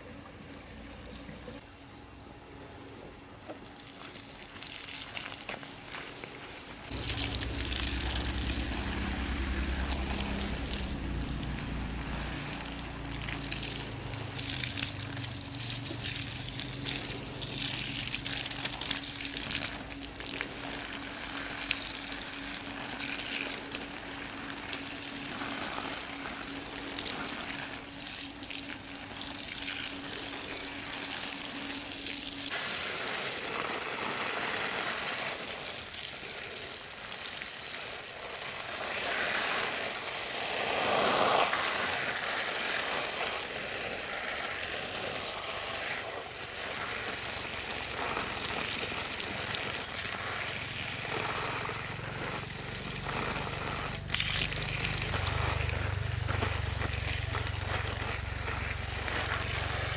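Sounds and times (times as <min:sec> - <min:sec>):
water gushing and splashing: 0:04.4 - 0:59.9
steady low hum: 0:06.8 - 0:32.4.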